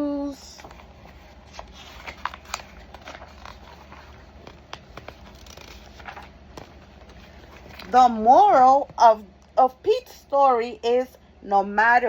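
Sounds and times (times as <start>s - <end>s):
soft paper rustles: 0.4s - 9.0s
book pages turning: 0.5s - 8.2s.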